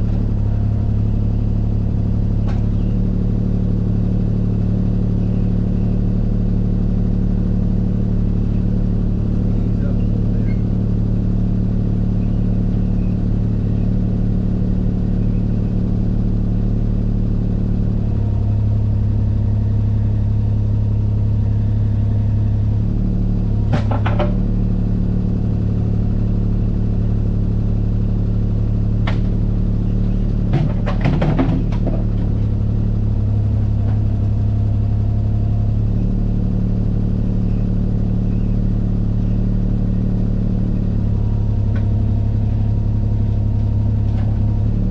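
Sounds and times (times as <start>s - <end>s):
diesel engine running: 0.0s - 44.9s
metal clanks and rattles: 30.4s - 32.4s.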